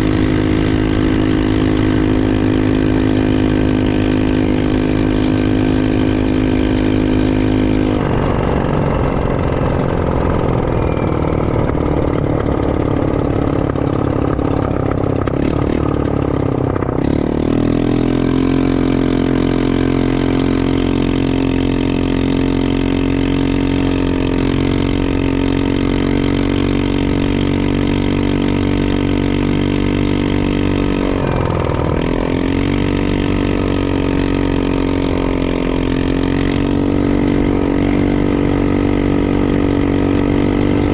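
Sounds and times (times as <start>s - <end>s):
atv engine running: 0.0s - 40.9s.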